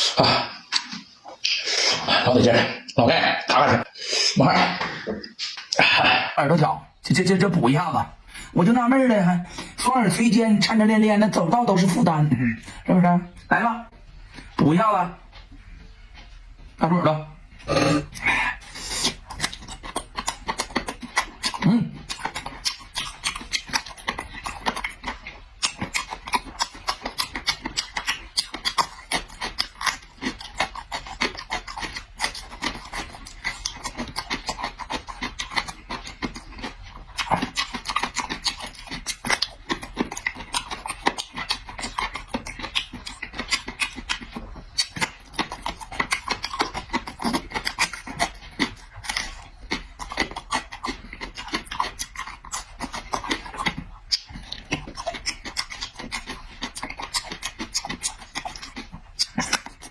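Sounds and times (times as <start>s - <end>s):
crunching of cartilage: 19.0s - 59.9s.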